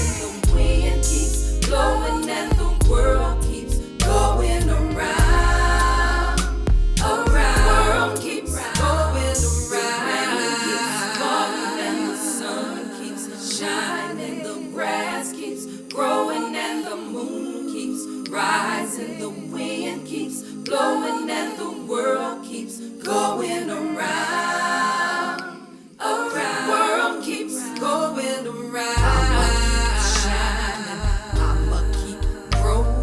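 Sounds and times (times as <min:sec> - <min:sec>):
voices singing a cappella: 0:00.0 - 0:33.0.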